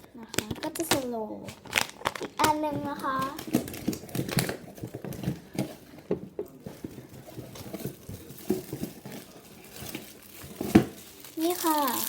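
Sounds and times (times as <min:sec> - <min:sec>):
foam toy being squeezed: 0:11.4 - 0:12.0.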